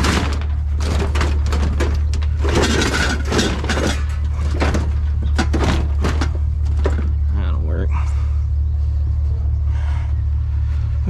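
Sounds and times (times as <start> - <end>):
junk clattering in a dumpster: 0.0 - 7.4
steady low hum: 0.0 - 11.0.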